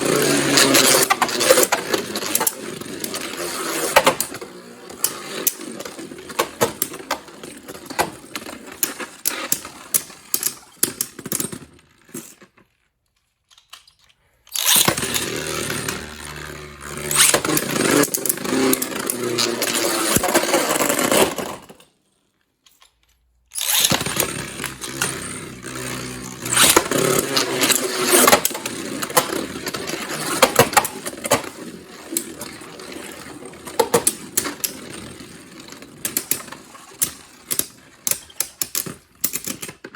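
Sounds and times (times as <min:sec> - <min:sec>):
spinning tops whirring: 0:14.6 - 0:21.2, 0:23.6 - 0:37.5.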